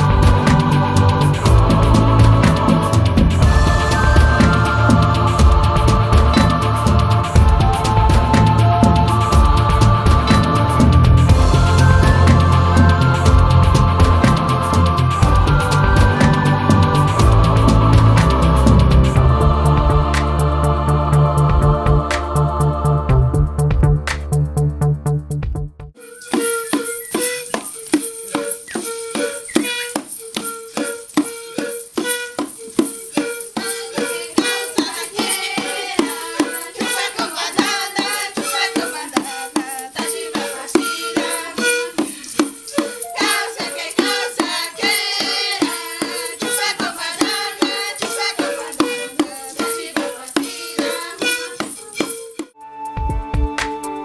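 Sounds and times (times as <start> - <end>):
held note: 0.0 - 18.6, 40.4 - 47.4
rattle beating quick strokes: 0.0 - 21.5, 26.0 - 52.6.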